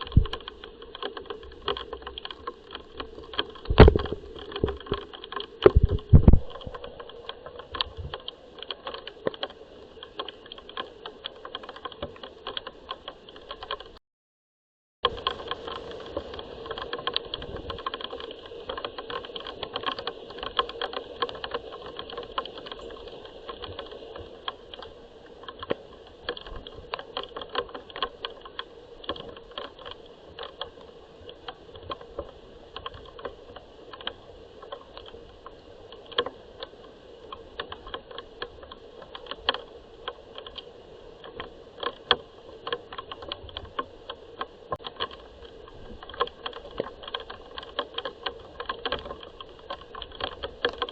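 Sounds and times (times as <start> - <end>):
raindrops tapping hard surface: 0.0 - 14.0
steady rain hiss: 0.0 - 14.0, 15.0 - 50.9.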